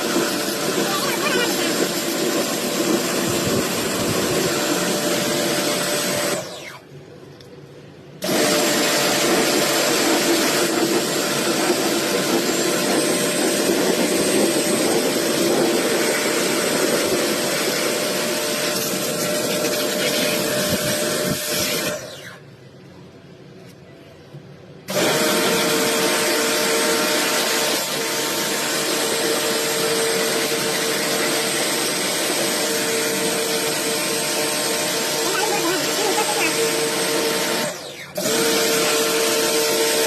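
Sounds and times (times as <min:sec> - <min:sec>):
small motor running with hiss: 0:00.0 - 0:05.4, 0:17.9 - 0:22.3, 0:25.0 - 0:40.0.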